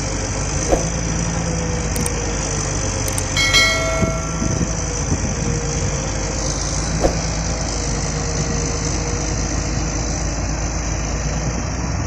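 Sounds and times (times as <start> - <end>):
heavy diesel engine running: 0.0 - 12.0
sharp clank: 3.1 - 4.9.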